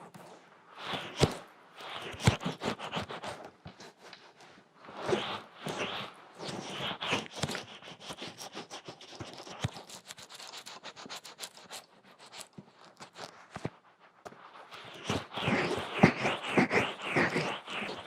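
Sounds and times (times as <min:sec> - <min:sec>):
fingers scratching microphone: 0:05.0 - 0:13.7, 0:14.8 - 0:18.0.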